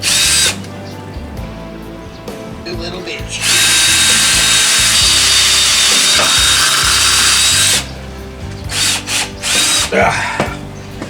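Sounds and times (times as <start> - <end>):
power drill boring into wood: 0.0 - 0.7, 3.3 - 8.0, 8.7 - 10.6.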